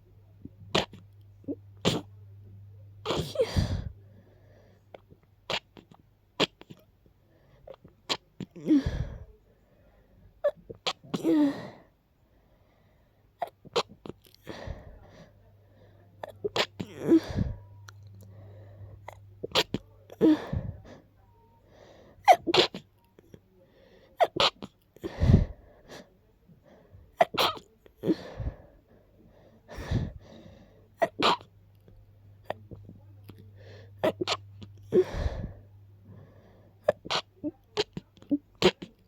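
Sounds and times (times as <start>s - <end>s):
person sneezing: 0.7s - 1.0s, 1.8s - 2.2s, 3.0s - 4.0s, 5.5s - 6.8s, 16.2s - 17.7s, 19.0s - 20.8s, 22.2s - 22.8s, 24.2s - 25.5s, 27.2s - 28.6s, 31.0s - 31.5s, 33.7s - 35.6s, 36.8s - 39.0s.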